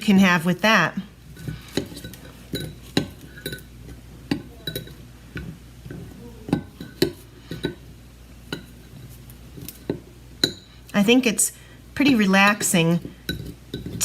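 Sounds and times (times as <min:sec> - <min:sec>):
spoon and fork clinking bowl: 0:01.4 - 0:03.7, 0:04.3 - 0:07.8.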